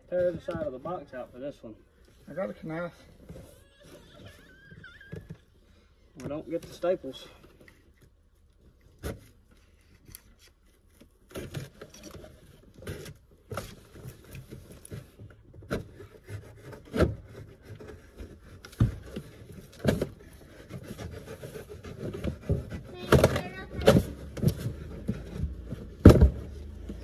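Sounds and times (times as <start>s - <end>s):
cardboard scraping and tearing: 8.9s - 27.0s.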